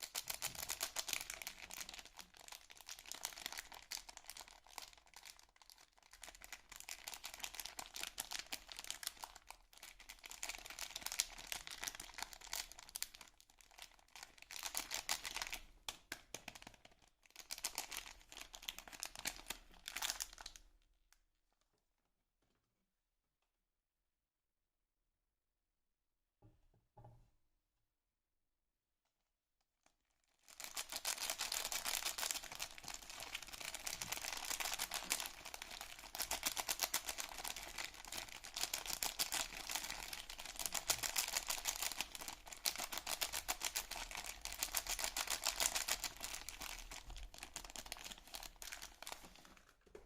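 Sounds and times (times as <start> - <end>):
wrapper crinkling: 0.0 - 20.6, 30.4 - 50.0
packaging tearing: 30.5 - 49.7.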